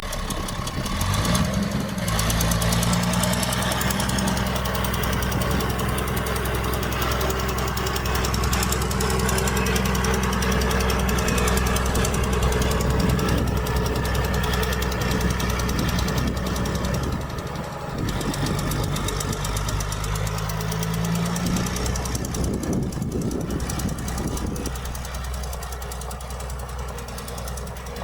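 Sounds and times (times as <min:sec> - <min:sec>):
heavy machinery diesel engine: 0:00.0 - 0:28.0.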